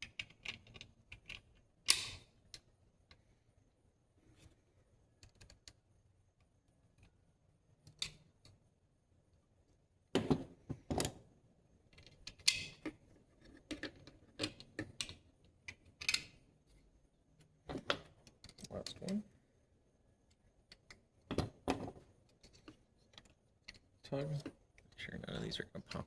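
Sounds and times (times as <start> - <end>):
clicks of small hard parts: 0.0 - 2.6.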